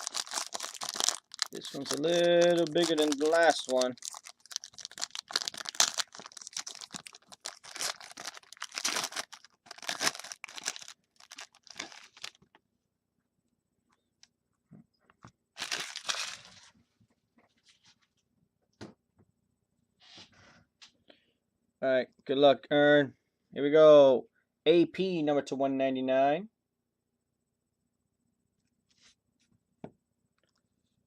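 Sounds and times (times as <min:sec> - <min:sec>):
plastic wrapping crinkling: 0:00.0 - 0:12.5, 0:15.6 - 0:16.7.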